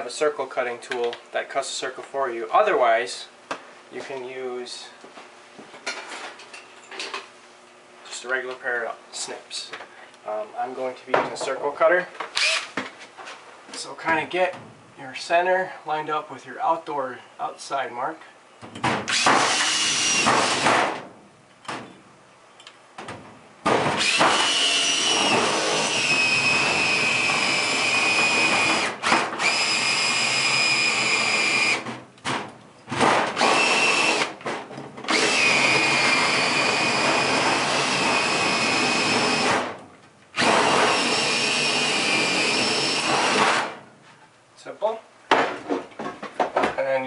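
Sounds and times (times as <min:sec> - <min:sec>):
power drill cutting sheet metal: 0:12.4 - 0:12.7, 0:19.1 - 0:20.7, 0:24.0 - 0:31.8, 0:33.3 - 0:34.4, 0:35.1 - 0:39.7, 0:40.4 - 0:43.8.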